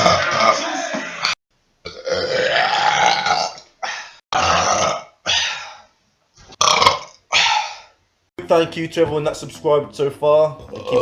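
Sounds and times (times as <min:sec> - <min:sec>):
men burping loudly: 0:00.0 - 0:05.4, 0:06.5 - 0:07.2, 0:10.6 - 0:11.0.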